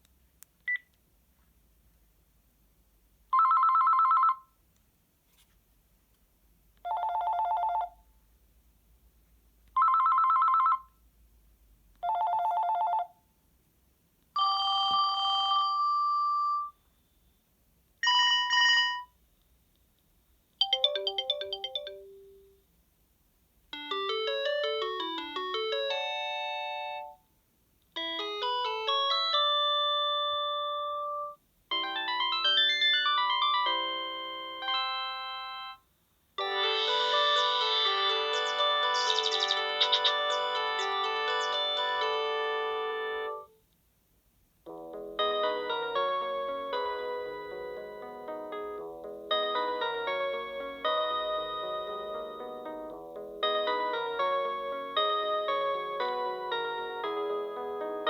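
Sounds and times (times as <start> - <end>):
electronic ringtone melodies: 20.6 - 22.6, 23.8 - 27.2, 28.0 - 35.8, 36.4 - 43.5, 44.7 - 58.0
electronic trilling phone rings: 36.4 - 43.4.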